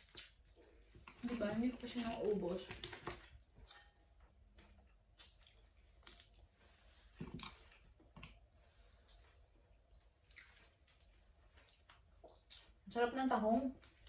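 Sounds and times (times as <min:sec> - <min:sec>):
person chewing with mouth clicks: 0:03.7 - 0:06.6, 0:07.2 - 0:12.8.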